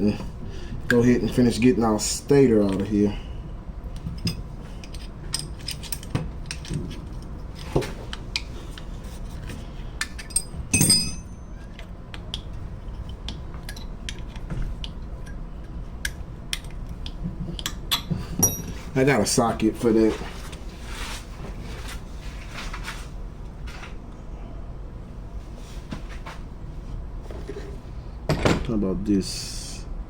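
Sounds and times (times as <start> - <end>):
metal tools clinking: 4.2 - 7.7, 10.1 - 11.8, 18.4 - 18.8
ringing metal clank: 10.3 - 11.4, 18.4 - 18.7.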